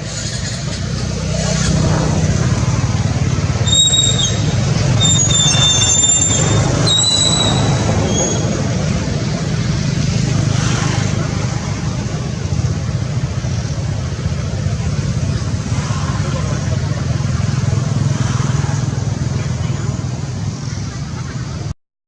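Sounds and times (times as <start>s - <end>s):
motor vehicle rumbling: 0.0s - 21.8s
thin high squeals: 3.6s - 8.6s.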